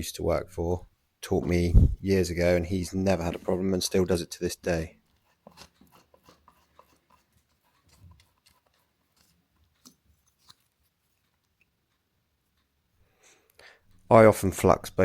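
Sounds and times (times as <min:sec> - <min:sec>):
small clicks and scrapes of handling: 0:03.2 - 0:14.1.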